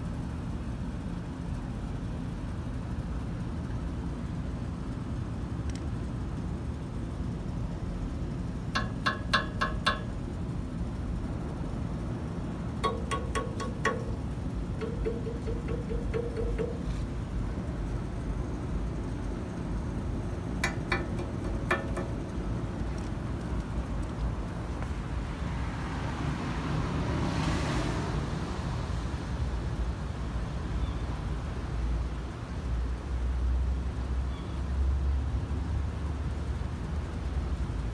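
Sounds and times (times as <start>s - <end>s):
street traffic rumble: 0.0s - 37.9s.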